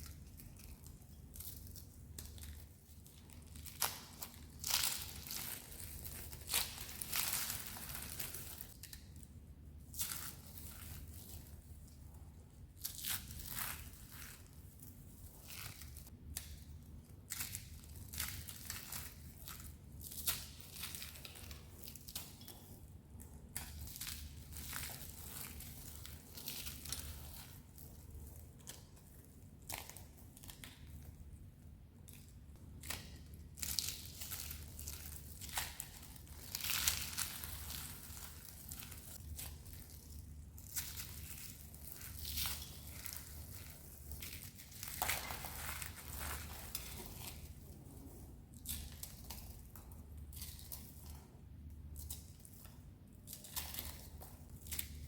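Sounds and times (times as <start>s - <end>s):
dry soap crunching: 0.0s - 12.0s, 12.8s - 31.3s, 32.1s - 51.2s.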